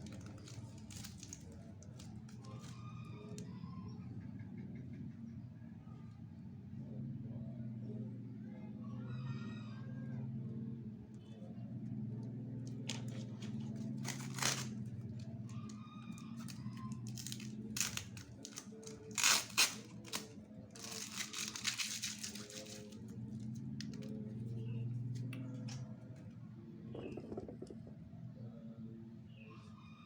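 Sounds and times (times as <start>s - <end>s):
plastic packaging crinkling: 0.0s - 2.7s, 12.9s - 15.0s, 16.4s - 24.1s.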